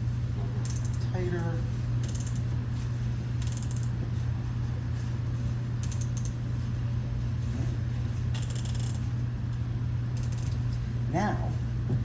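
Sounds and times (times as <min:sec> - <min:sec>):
steady low hum: 0:00.0 - 0:12.0
zip ties ratcheting clicks: 0:00.7 - 0:01.0, 0:02.0 - 0:02.5, 0:03.4 - 0:03.9, 0:05.8 - 0:06.4, 0:08.4 - 0:09.0, 0:10.2 - 0:10.6.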